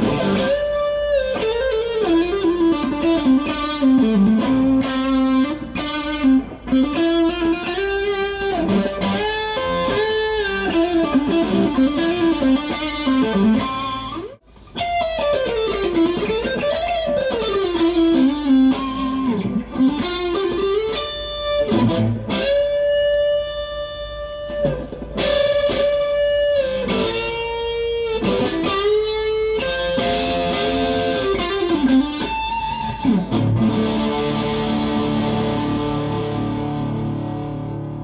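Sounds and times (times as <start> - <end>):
electric guitar lead melody: 0.0 - 38.0.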